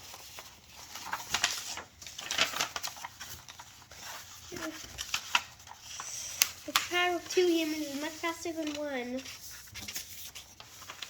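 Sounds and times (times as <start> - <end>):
paper rustling: 0.0 - 11.0
paper creasing clicks: 0.9 - 11.0.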